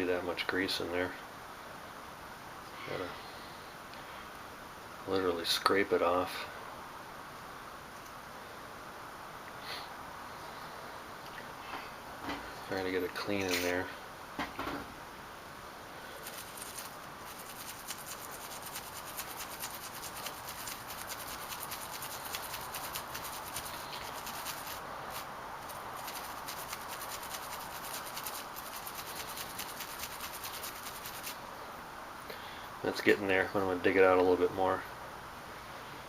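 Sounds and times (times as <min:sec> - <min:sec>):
scrubbing and scraping grease: 0:16.2 - 0:31.4.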